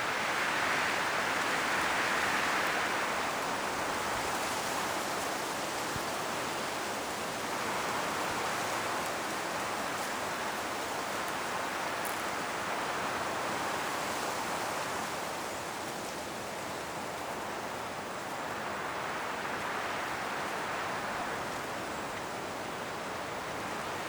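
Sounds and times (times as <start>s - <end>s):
wind rushing through trees: 0.0s - 24.0s
leaves ticking and crackling: 7.5s - 13.1s.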